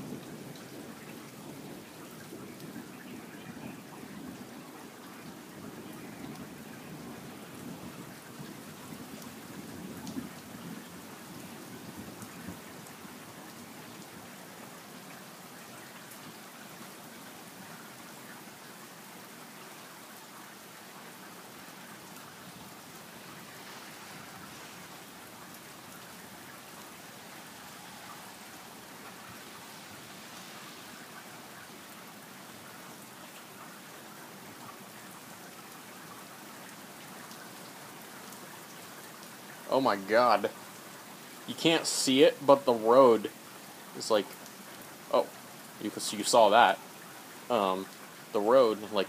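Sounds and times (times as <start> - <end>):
heavy rain falling: 0.0 - 49.0
thunder rumble: 22.2 - 32.9.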